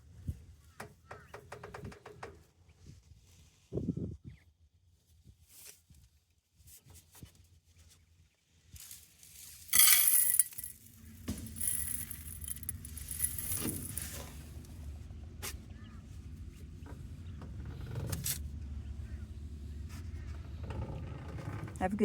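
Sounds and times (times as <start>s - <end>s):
metallic jingle: 9.7s - 10.7s, 11.4s - 14.2s.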